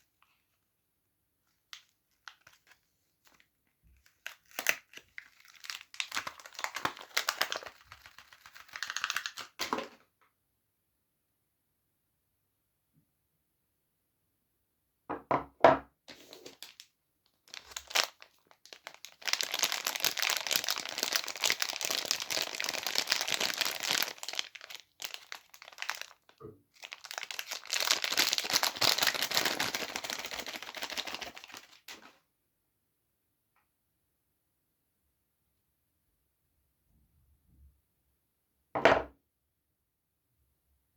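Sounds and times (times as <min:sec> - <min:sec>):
wrappers crinkling and tearing: 0:01.7 - 0:09.7, 0:16.1 - 0:16.8, 0:17.4 - 0:32.1.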